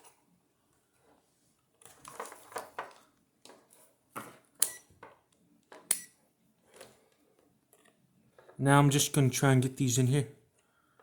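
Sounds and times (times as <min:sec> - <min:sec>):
scrapes and clatter of handling: 0:00.0 - 0:05.9, 0:06.6 - 0:08.6.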